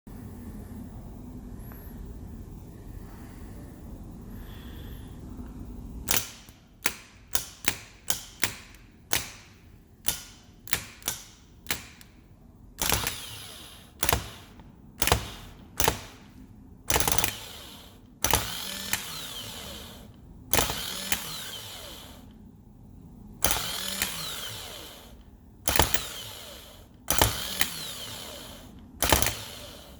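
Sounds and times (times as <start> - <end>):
starter motor clicking: 12.8 - 16.2, 16.9 - 22.3, 23.4 - 29.9
starter motor whine: 12.8 - 16.3, 16.9 - 22.3, 23.4 - 29.9.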